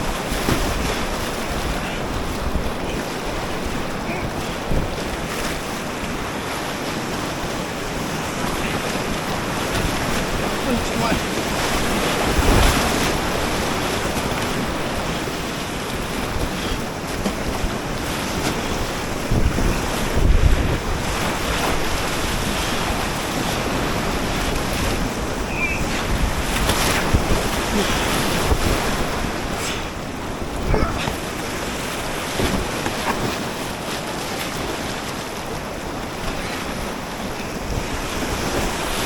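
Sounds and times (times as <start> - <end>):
river water rushing and splashing: 0.0 - 39.0
wind buffeting microphone: 0.0 - 39.0.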